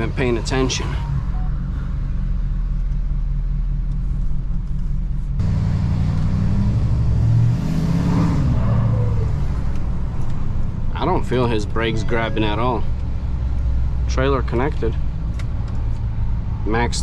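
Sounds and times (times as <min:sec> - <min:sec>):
pickup truck engine revving: 0:05.4 - 0:14.6.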